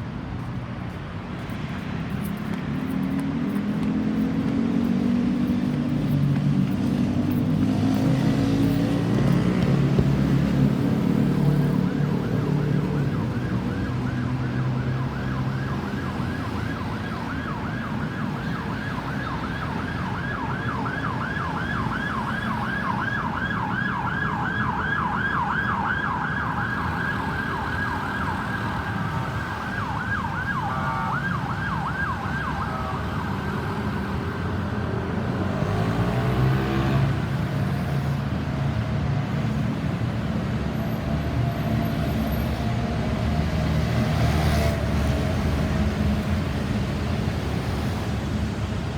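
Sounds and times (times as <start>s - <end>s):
road traffic noise: 0.0s - 48.9s
ambulance siren yelping: 11.0s - 34.5s.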